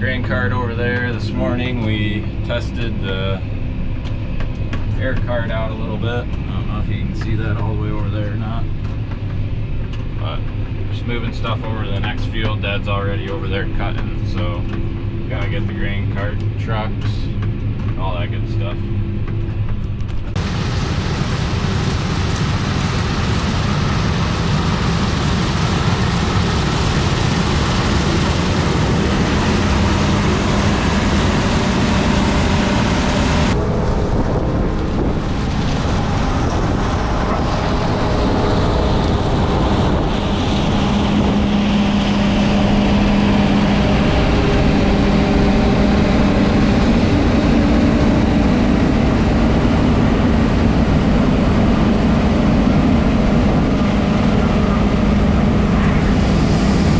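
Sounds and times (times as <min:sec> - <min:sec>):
tractor engine running: 0:03.2 - 0:56.9
wind noise on microphone: 0:19.0 - 0:56.9.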